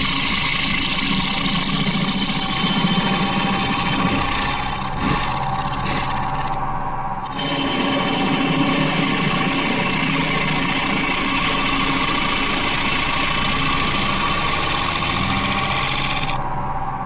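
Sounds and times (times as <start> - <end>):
wood lathe cutting: 0.0 - 6.6, 7.2 - 16.4.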